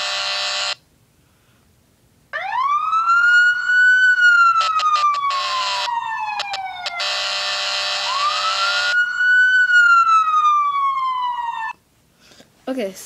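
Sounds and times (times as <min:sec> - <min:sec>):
electronic siren wailing: 0:00.0 - 0:00.8, 0:02.4 - 0:11.8
siren air horn blasts: 0:00.0 - 0:00.8, 0:02.4 - 0:11.8.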